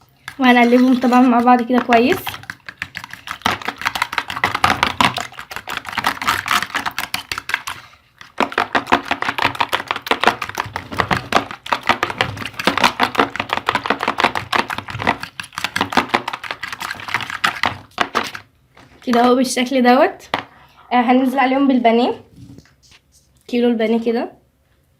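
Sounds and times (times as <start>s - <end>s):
whisk clicking against bowl: 0.3s - 17.7s.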